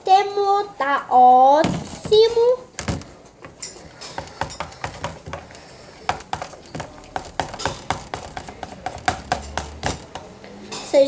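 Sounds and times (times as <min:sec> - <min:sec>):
slime mixing clicks and taps: 0:04.2 - 0:10.3.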